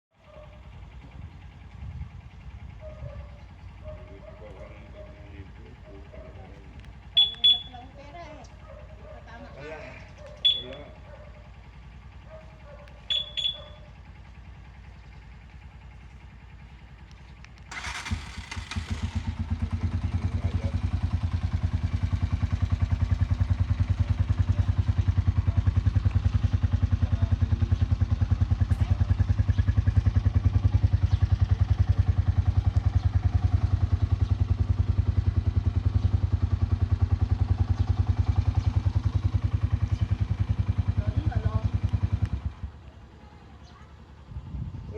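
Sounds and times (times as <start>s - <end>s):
motorcycle engine idling: 0.2s - 44.9s
motorcycle alarm beeps: 7.0s - 8.0s, 10.4s - 11.1s, 13.0s - 14.0s.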